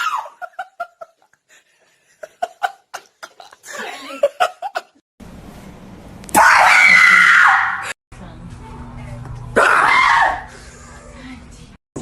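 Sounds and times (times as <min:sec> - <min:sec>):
person laughing: 0:02.2 - 0:05.0.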